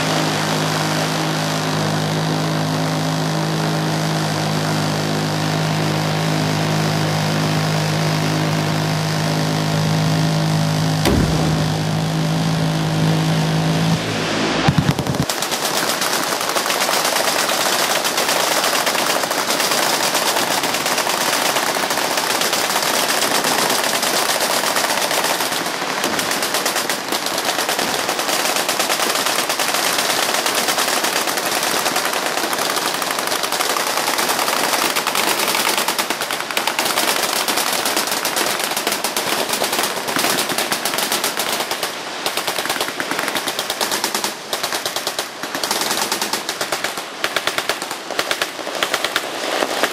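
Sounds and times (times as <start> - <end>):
machine gun automatic fire: 11.0 - 13.8, 14.6 - 49.9.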